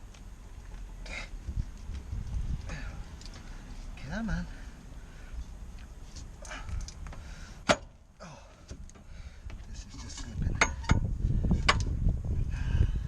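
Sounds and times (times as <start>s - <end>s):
low rumbling of straining: 0.0s - 13.0s
pry bar clanking on metal: 10.0s - 11.9s.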